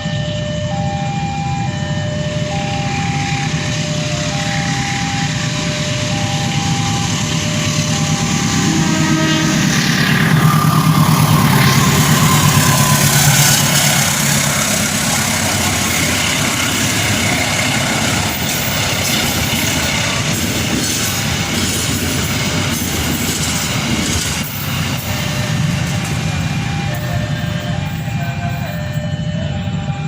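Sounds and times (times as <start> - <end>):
train wheels rushing on rails: 2.4 - 30.0
tone falling in pitch: 2.5 - 14.1.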